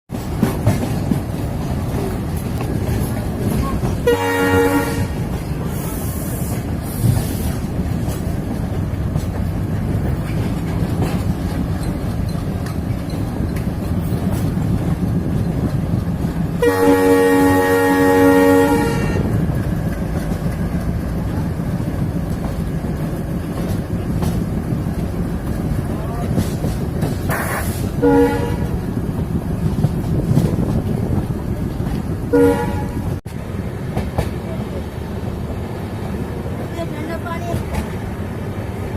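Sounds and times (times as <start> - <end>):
train wheels rumbling on rails: 0.1 - 38.9
train horn: 3.9 - 5.4, 16.6 - 19.4, 28.0 - 28.8, 32.3 - 33.2.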